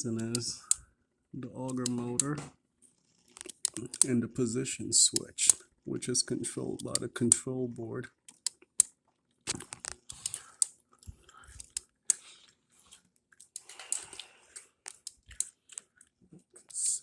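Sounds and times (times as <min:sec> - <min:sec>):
plastic parts clicking and scraping: 0:01.7 - 0:04.2, 0:08.2 - 0:16.4.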